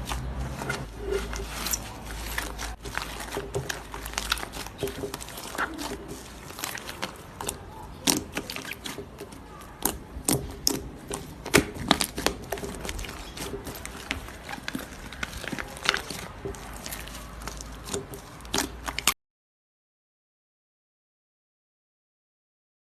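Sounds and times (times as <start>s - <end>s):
slime squelching and popping: 0.0s - 19.2s.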